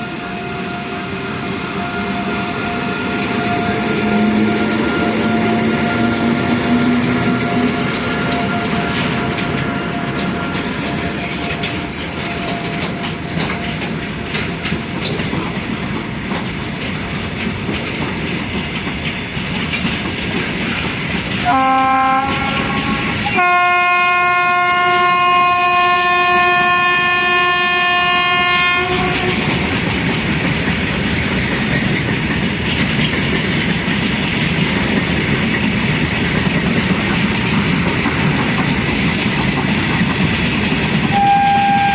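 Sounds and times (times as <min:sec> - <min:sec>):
train wheels rumbling and clattering: 0:00.0 - 0:41.9
wheel squeal: 0:00.2 - 0:15.2, 0:17.2 - 0:19.7
locomotive horn blasts: 0:21.4 - 0:29.6, 0:41.1 - 0:41.9.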